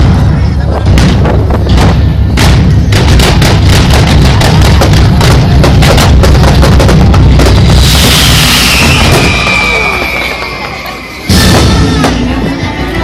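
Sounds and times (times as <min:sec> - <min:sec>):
fireworks bangs: 0:00.0 - 0:12.4
deep rumble: 0:00.0 - 0:13.0
hissing firework whistle: 0:07.6 - 0:12.1.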